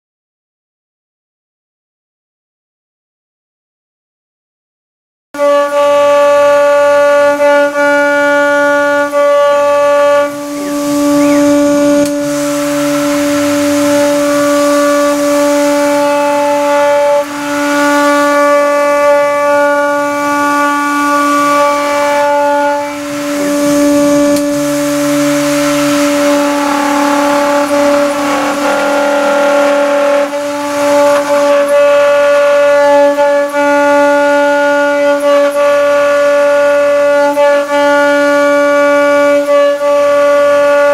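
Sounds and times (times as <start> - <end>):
milling machine whine: 9.2 - 36.4.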